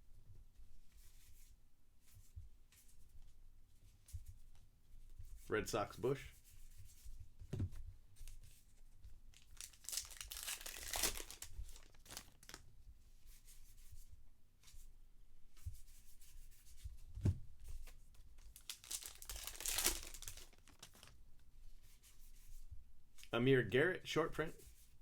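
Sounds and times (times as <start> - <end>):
rustling of wrappers and cards: 8.2 - 12.7, 17.6 - 21.2
wrappers tearing and crinkling: 9.3 - 12.6, 18.4 - 21.2.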